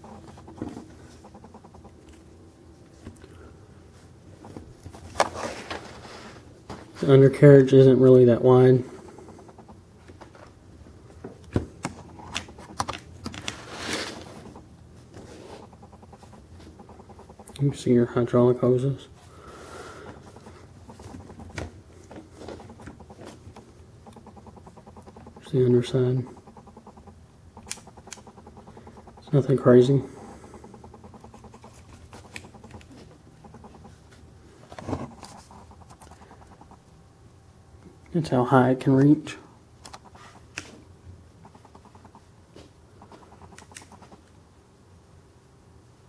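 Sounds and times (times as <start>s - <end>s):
low room hum: 0.0s - 46.0s
handling noise of toy model: 11.2s - 17.5s, 20.1s - 25.5s
small clicks: 26.3s - 29.4s, 43.0s - 44.4s.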